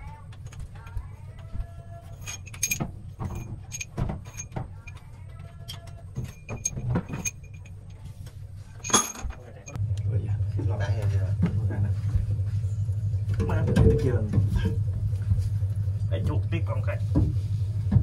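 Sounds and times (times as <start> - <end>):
steady low hum: 0.0 - 18.0
metal hand tools clinking: 2.0 - 9.8.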